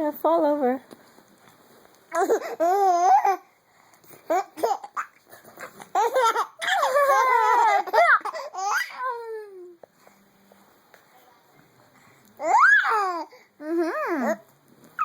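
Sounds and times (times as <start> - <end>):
baby laughing: 2.1 - 3.4, 4.3 - 9.3.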